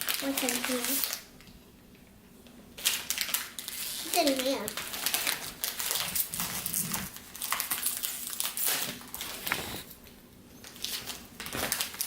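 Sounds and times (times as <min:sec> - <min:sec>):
plastic packaging crinkling: 0:02.8 - 0:10.0, 0:10.6 - 0:12.0.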